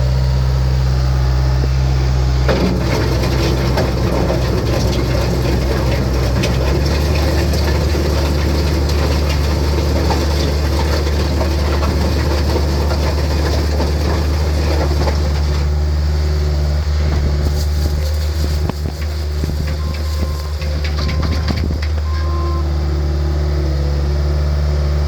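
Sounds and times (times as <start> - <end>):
diesel engine droning: 0.0 - 25.0.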